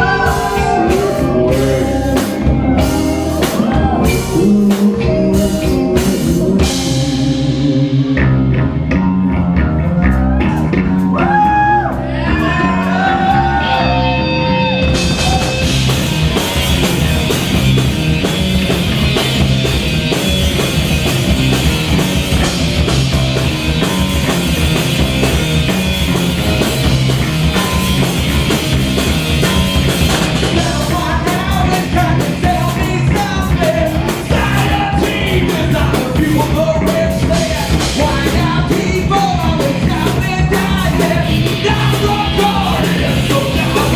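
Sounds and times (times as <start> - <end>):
bass guitar: 0.0 - 43.9
distorted electric guitar: 0.0 - 43.9
drum kit: 0.0 - 43.9.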